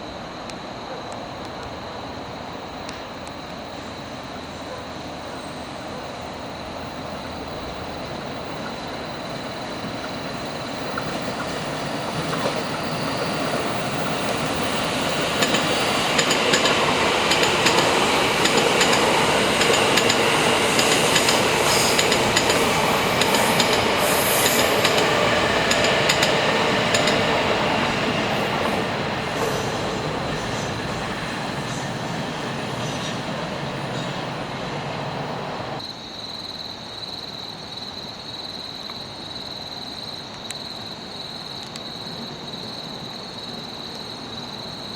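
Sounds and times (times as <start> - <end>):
train running on rails: 0.0 - 35.9
high insect chirping: 1.5 - 44.9.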